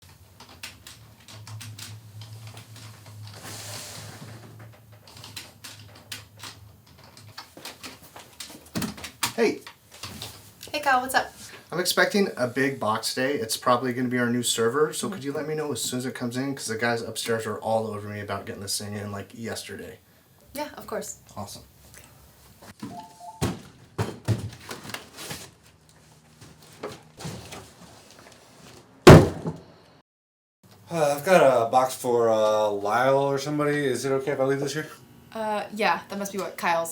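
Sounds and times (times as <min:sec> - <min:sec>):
two-note electronic beep: 0:22.9 - 0:23.4
knocks of things being handled: 0:29.1 - 0:29.7
loud thump: 0:29.1 - 0:29.7.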